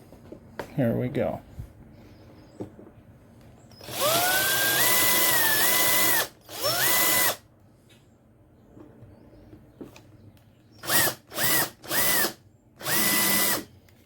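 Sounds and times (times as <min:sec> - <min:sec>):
cordless drill whining: 0:03.7 - 0:07.4, 0:10.8 - 0:13.7.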